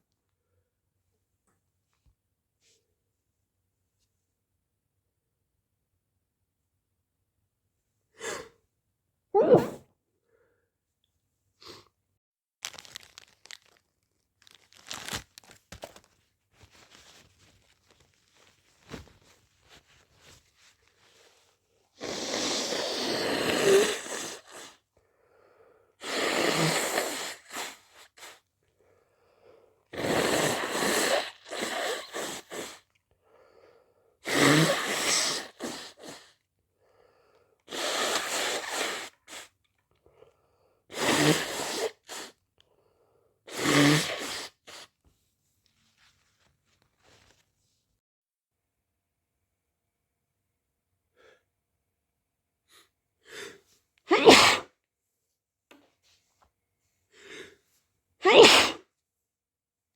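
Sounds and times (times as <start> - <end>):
breath drawn in: 9.4 - 9.8
person sneezing: 9.4 - 9.8, 34.2 - 36.3, 40.9 - 42.4, 43.5 - 44.9, 53.4 - 54.8, 58.2 - 58.9.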